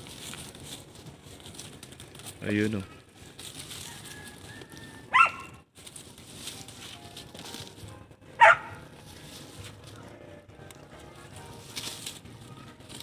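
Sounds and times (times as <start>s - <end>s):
dog barking: 5.1s - 5.5s, 8.4s - 8.8s.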